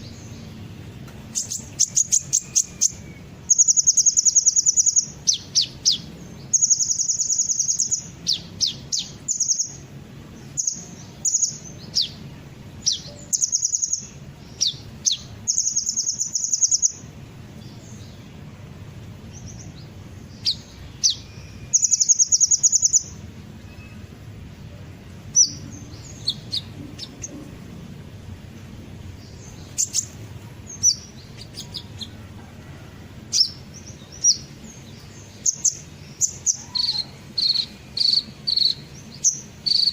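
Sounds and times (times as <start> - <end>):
faint low hum: 0.0 - 39.9
bird trills: 1.3 - 9.9, 10.5 - 12.2, 12.8 - 17.0, 20.4 - 24.1, 29.3 - 39.9
sharp downslurred bird chirps: 1.3 - 12.2, 12.8 - 17.0, 19.4 - 24.1, 29.2 - 32.2, 33.3 - 39.9.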